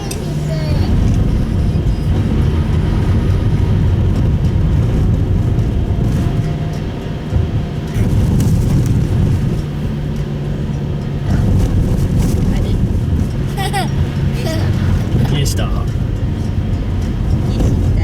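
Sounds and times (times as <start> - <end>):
car engine running: 0.0 - 18.0
tyre and road noise: 0.0 - 18.0.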